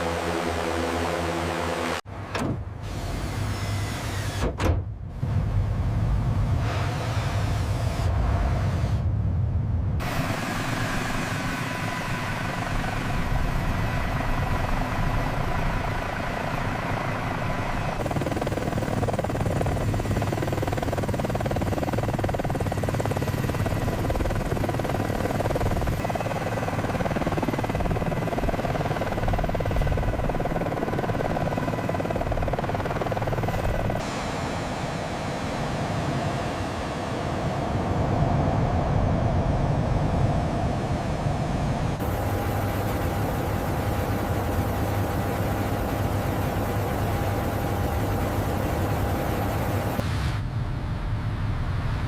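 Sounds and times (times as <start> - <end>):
faint turbine whine: 5.1 - 52.0
helicopter rotor rumble: 10.0 - 50.1.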